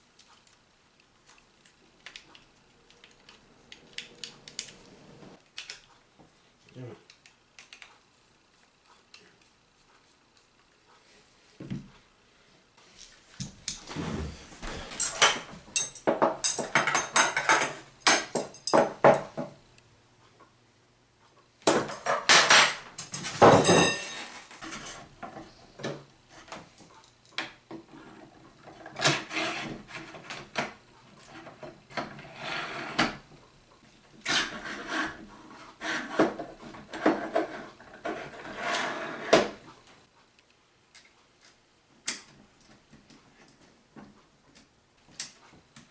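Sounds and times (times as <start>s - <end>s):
parts and tools clattering: 14.7s - 19.6s, 21.7s - 26.0s.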